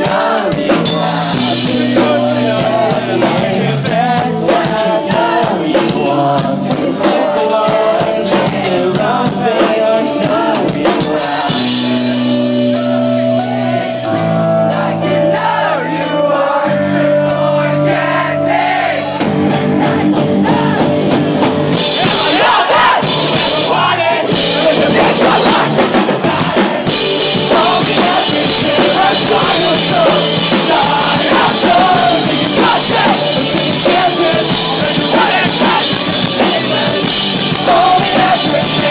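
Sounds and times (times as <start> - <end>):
person singing: 0.0 - 19.2, 22.0 - 38.9
pop-punk band playing live: 0.0 - 38.9.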